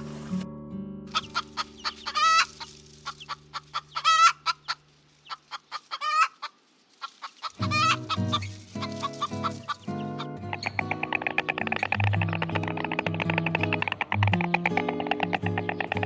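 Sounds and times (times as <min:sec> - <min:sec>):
chicken clucking: 0:01.1 - 0:16.0.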